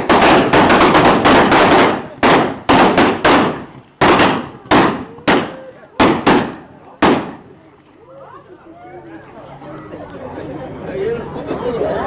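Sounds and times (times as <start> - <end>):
blank gunshots cracking: 0.0 - 7.5.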